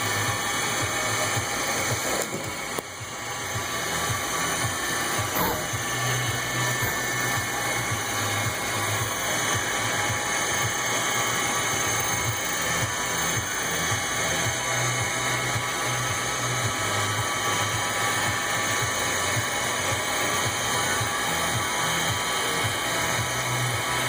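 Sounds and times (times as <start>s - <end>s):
machine tool machining metal: 0.0s - 24.0s.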